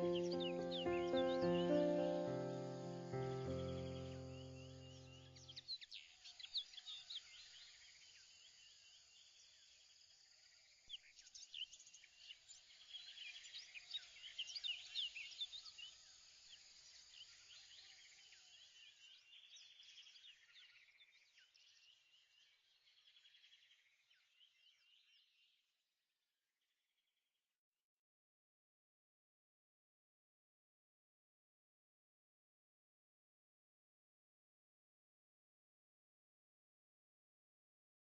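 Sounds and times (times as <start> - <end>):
small birds chirping and trilling: 0.0 - 25.6.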